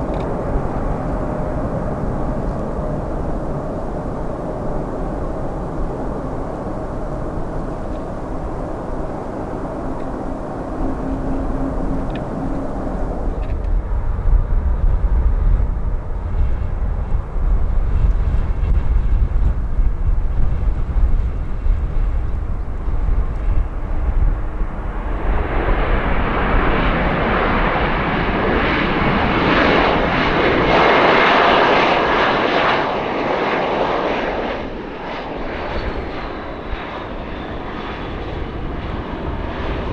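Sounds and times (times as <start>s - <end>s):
jet airliner engines roaring: 0.0s - 39.9s.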